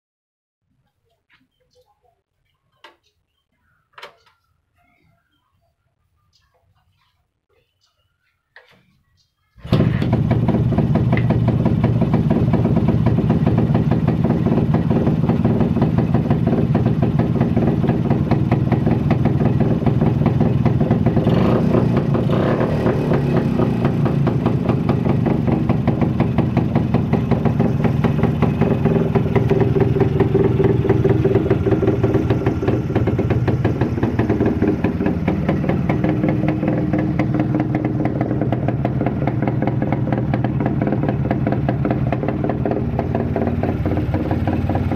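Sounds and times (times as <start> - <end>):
motorcycle engine idling: 9.6 - 44.9.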